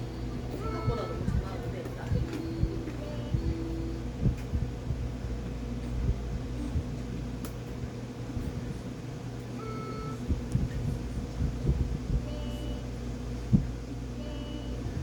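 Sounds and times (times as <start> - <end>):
electronic toy piano notes: 0.0 - 4.3, 14.1 - 15.0
soft low thumps: 0.0 - 8.9, 9.7 - 15.0
steady low hum: 0.0 - 15.0.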